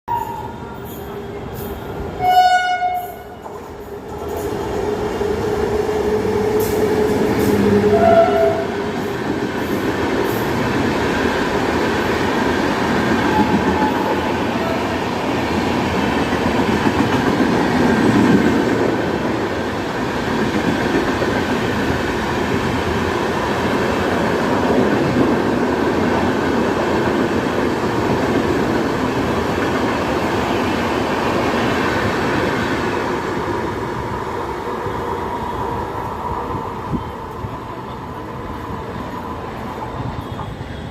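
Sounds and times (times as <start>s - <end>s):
train wheels rumbling on rails: 0.1s - 40.9s
train horn blast: 2.2s - 3.4s, 6.2s - 8.8s.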